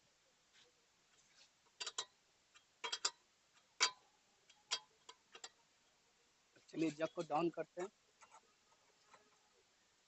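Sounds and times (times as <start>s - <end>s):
wrench clicking on wheel nuts: 1.8s - 3.2s.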